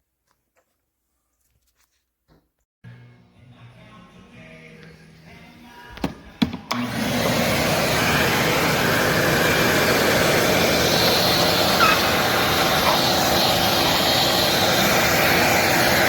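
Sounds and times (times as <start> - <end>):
shop vacuum running: 6.4 - 16.0.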